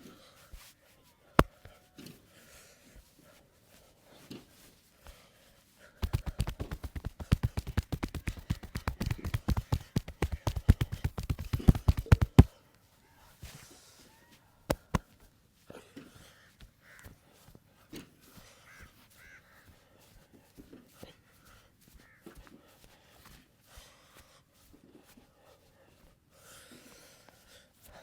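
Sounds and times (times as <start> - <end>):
faint taps: 6.0 - 12.5, 14.7 - 15.0
hands slapping and chopping on body: 6.0 - 12.5, 14.7 - 15.0
sharp clicks: 6.0 - 12.5, 14.7 - 15.0.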